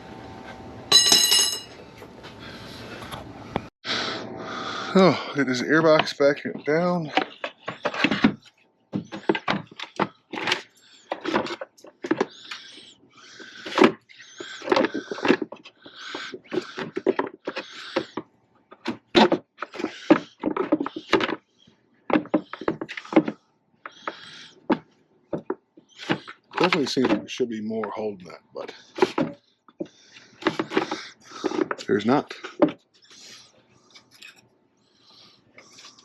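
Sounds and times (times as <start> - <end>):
rubbery squeaks: 5.4 - 28.0, 28.6 - 36.0
plastic box knocking and scraping: 5.8 - 12.7, 13.6 - 21.4, 22.1 - 27.3, 29.0 - 32.8.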